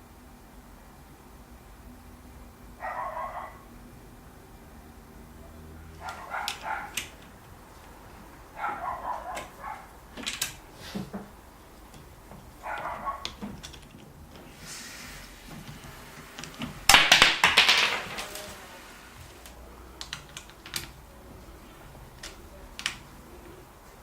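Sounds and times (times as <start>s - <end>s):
parts rattling and rustling: 5.9s - 24.0s
sharp clicks: 19.4s - 21.0s, 22.2s - 23.1s.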